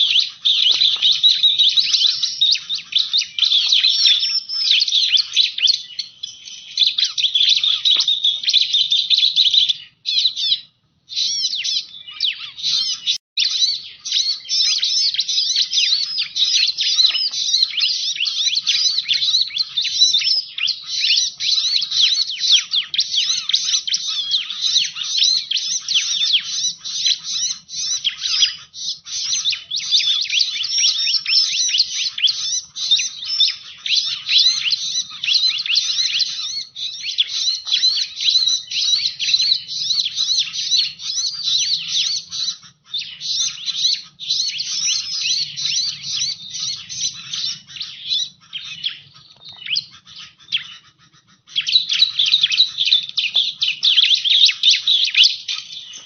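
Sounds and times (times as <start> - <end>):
bird song with rapid high chirps: 0.0 - 56.0.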